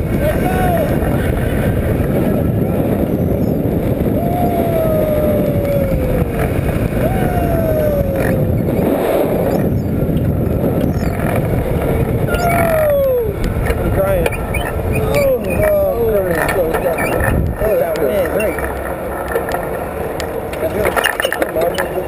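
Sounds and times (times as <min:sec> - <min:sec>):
strong wind on microphone: 0:00.0 - 0:18.7
tone sliding downward: 0:04.1 - 0:09.8, 0:12.2 - 0:19.8.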